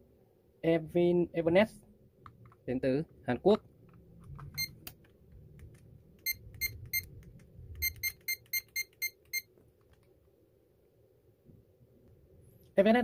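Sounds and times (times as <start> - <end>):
keypad beeping: 4.4 - 4.8, 6.2 - 7.2, 7.8 - 9.5.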